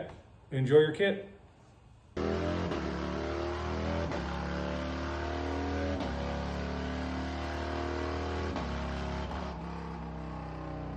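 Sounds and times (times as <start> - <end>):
motorcycle engine accelerating: 2.2 - 10.9.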